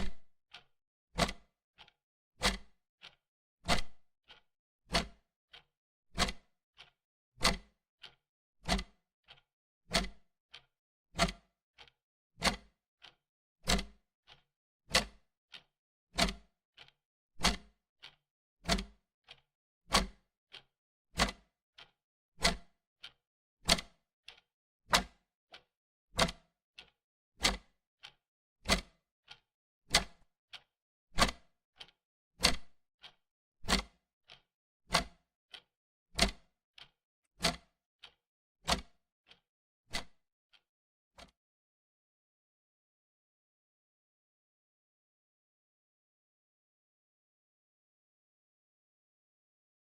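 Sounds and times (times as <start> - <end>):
wall clock ticking: 16.2 - 18.9, 26.2 - 27.7, 33.7 - 35.6, 36.2 - 37.7, 38.7 - 38.9.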